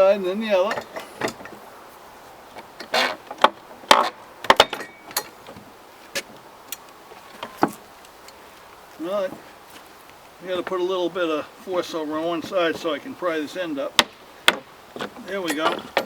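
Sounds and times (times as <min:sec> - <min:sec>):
wood and nails creaking: 0:02.4 - 0:10.9, 0:14.0 - 0:16.0
sharp knocks and cracks: 0:02.6 - 0:05.6, 0:14.0 - 0:16.0.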